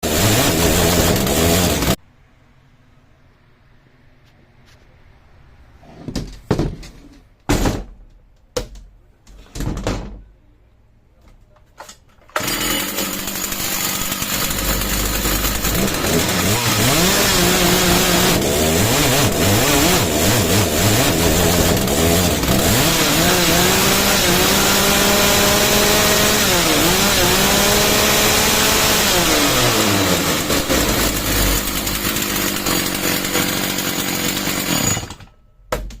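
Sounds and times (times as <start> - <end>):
chainsaw revving: 0.0 - 2.0, 12.4 - 35.1.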